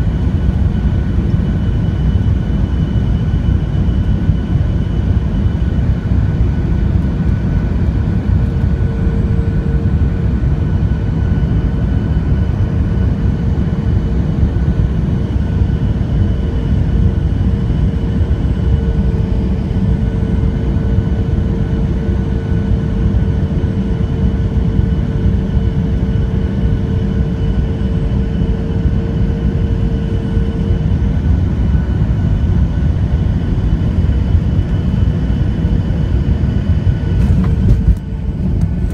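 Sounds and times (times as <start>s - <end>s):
airliner engine and airflow rumble: 0.0s - 38.9s.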